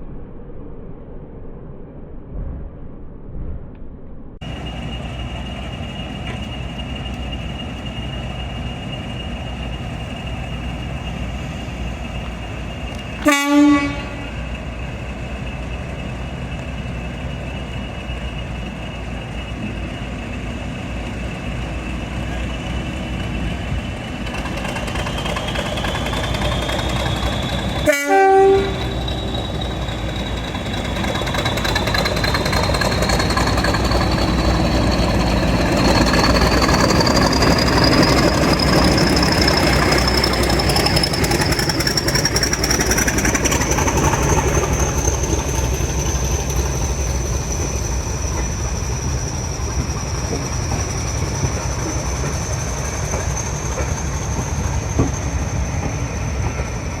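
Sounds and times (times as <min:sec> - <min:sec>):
train rumbling past: 0:00.0 - 0:57.0
train horn blast: 0:13.2 - 0:14.4, 0:27.8 - 0:29.0.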